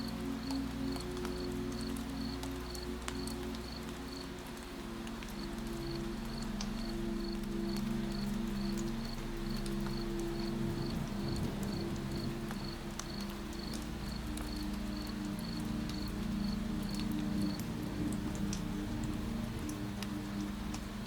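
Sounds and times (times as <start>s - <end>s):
light rain patter: 0.0s - 21.0s
cricket chirping: 5.4s - 17.6s.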